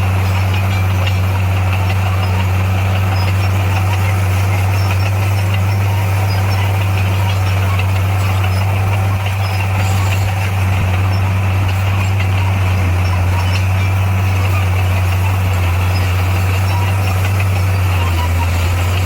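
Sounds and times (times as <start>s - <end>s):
diesel engine droning: 0.0s - 19.0s.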